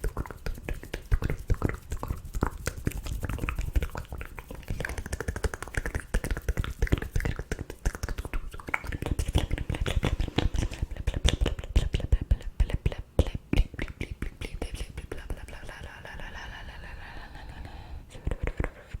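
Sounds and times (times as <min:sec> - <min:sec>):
wet tongue clicks and lip smacks: 0:00.0 - 0:09.7.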